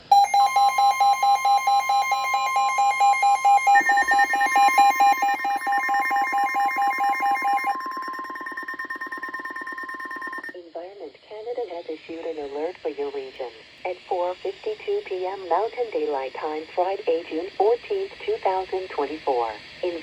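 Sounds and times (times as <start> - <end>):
steady high tone: 0.0 - 10.5
fast-pulsing electronic tone: 0.9 - 10.5.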